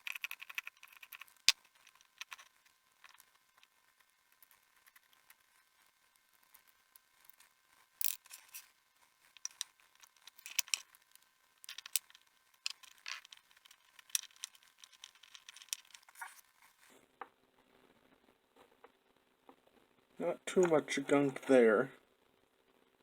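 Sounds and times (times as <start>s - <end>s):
small parts clicking and tapping: 0.0s - 16.9s.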